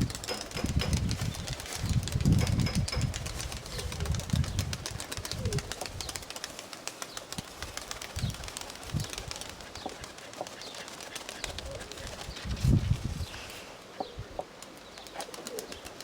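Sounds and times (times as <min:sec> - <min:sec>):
wind gusting on microphone: 0:00.0 - 0:06.3, 0:07.3 - 0:10.2, 0:11.4 - 0:14.5
pigeons cooing: 0:02.4 - 0:16.0.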